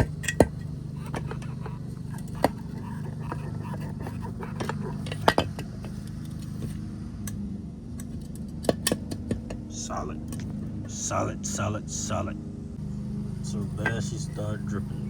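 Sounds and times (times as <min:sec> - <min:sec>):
metallic clinks and knocks: 0:00.0 - 0:10.9
steady low hum: 0:00.0 - 0:15.0.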